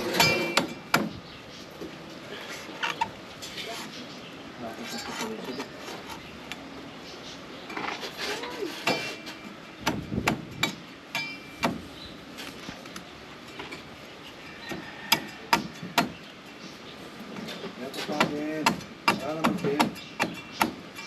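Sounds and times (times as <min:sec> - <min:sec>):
machete chopping coconut husk: 0:18.0 - 0:20.8.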